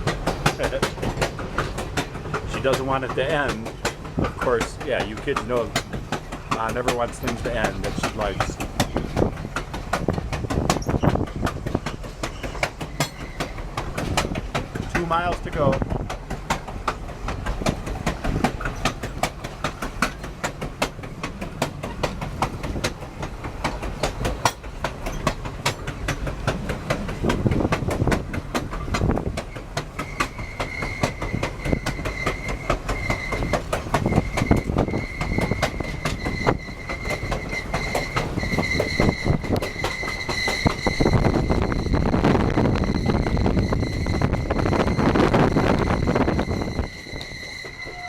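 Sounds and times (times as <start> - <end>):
train wheels clickety-clack: 0.0 - 48.0
high wheel squeal: 11.9 - 13.7, 29.5 - 48.0.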